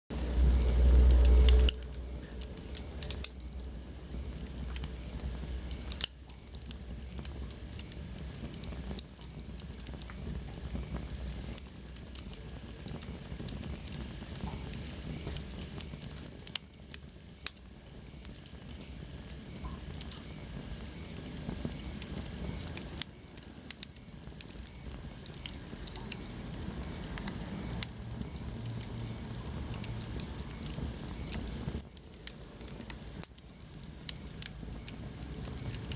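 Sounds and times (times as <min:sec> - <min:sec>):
wood fire crackling: 0:00.1 - 0:35.9
faint high whistle: 0:14.5 - 0:29.2.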